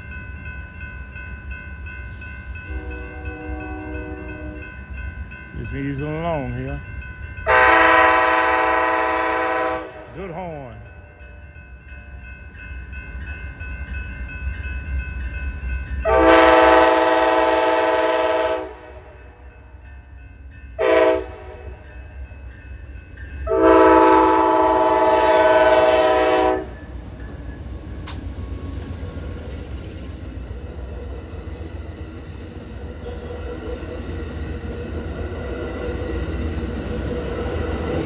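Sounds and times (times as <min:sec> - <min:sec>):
low rumble of passing train: 0:00.0 - 0:38.0
locomotive air horn: 0:02.7 - 0:04.6, 0:07.5 - 0:10.1, 0:16.0 - 0:19.1, 0:20.8 - 0:21.8, 0:23.5 - 0:26.8.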